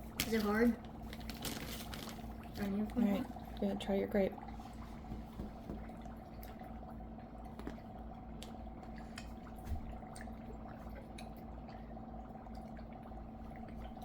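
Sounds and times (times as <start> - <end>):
dry ice fizzing and crackling: 0.0 - 4.8.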